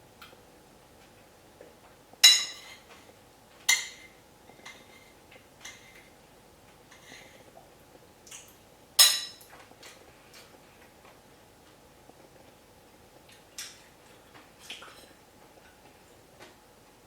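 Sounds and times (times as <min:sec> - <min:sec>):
tableware clinking: 0:02.2 - 0:02.9, 0:09.0 - 0:09.4.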